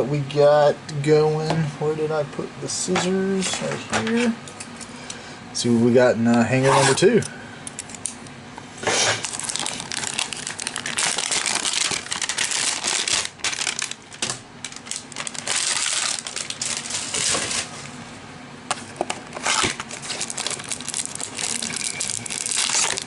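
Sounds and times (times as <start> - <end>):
plastic wrap crackling: 8.9 - 17.7, 19.3 - 23.0.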